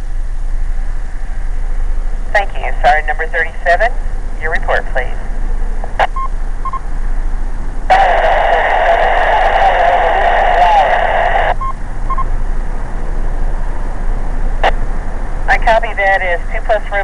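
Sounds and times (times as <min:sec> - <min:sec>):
noisy radio voice: 0:02.4 - 0:05.3, 0:07.9 - 0:11.6, 0:15.5 - 0:17.0
short beeps: 0:06.0 - 0:06.8, 0:11.6 - 0:12.3.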